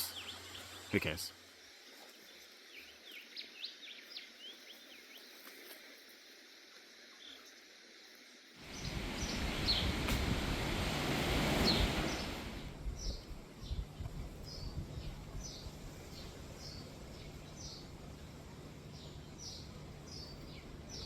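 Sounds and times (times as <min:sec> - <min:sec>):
small birds chirping: 0:00.0 - 0:05.7, 0:08.6 - 0:10.3, 0:11.5 - 0:21.0
loud rushing with deep rumble: 0:08.7 - 0:13.9.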